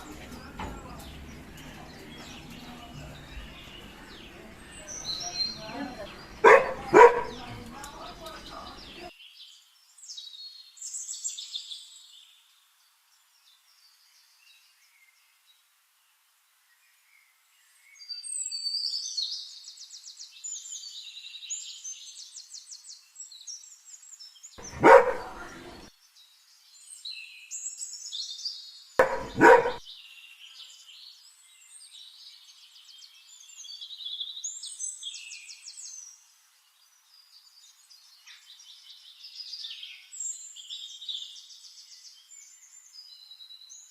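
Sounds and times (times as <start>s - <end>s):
birds chirping and twittering: 0.0s - 15.5s, 16.7s - 43.9s
dog barking loudly: 6.4s - 7.7s, 24.6s - 25.9s, 29.0s - 29.8s.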